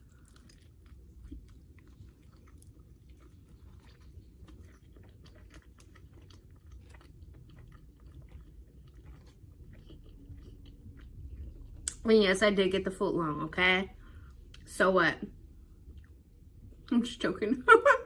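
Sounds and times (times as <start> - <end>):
chewing food: 0.0 - 12.0, 15.5 - 16.9.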